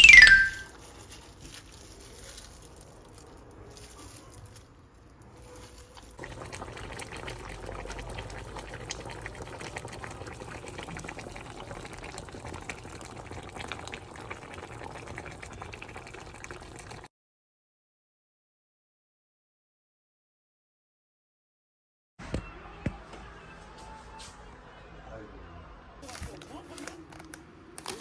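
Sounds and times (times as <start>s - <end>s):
water bubbling and splashing: 6.2s - 17.1s.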